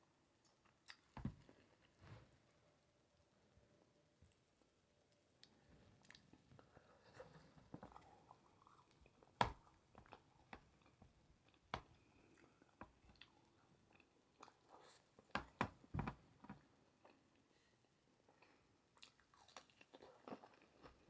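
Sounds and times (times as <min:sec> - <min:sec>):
mouth chewing food: 0:18.4 - 0:21.0.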